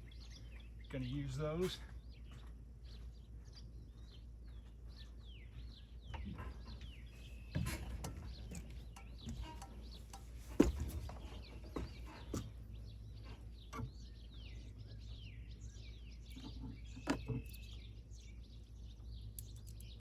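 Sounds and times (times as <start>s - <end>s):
small birds chirping: 0.0s - 20.0s
sharp knocks and clicks: 6.1s - 12.6s.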